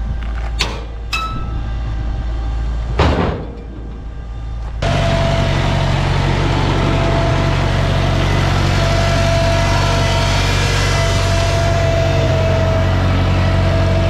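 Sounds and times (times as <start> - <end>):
vehicle engine running steadily: 0.0 - 14.0.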